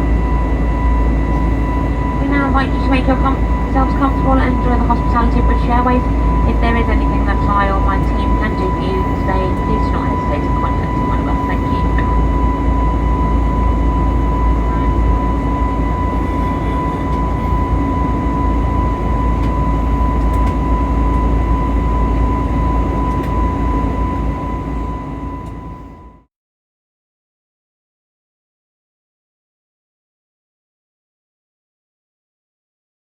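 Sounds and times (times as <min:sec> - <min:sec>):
airliner cabin engine rush: 0:00.0 - 0:26.0
steady high tone: 0:00.0 - 0:26.1.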